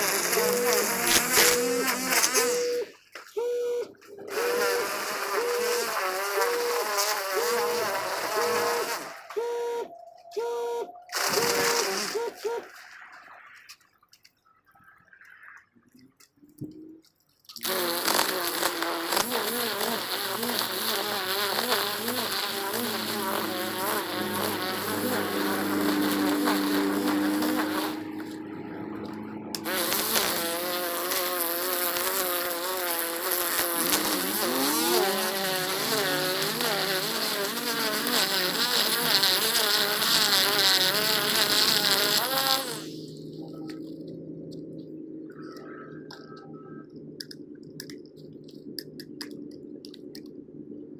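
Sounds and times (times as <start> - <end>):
string trimmer buzzing: 0.0 - 12.6, 17.7 - 42.9.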